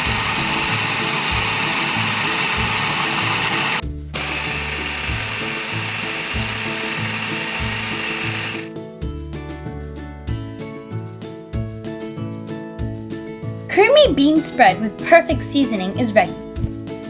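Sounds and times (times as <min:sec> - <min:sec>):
food processor running: 0:00.0 - 0:08.7
background music with steady beat: 0:00.0 - 0:17.0.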